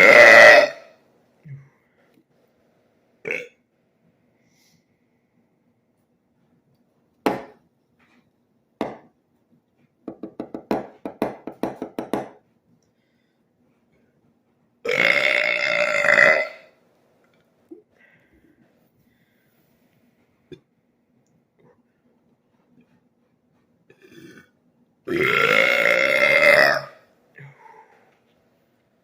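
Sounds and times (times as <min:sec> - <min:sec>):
man burping: 0:00.0 - 0:01.7, 0:03.2 - 0:03.6, 0:14.9 - 0:16.7, 0:23.9 - 0:27.6.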